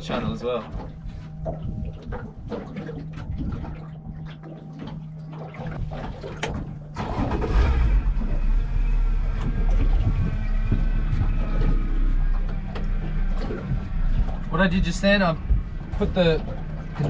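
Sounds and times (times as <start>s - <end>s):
boat engine rumbling: 0.0s - 17.0s.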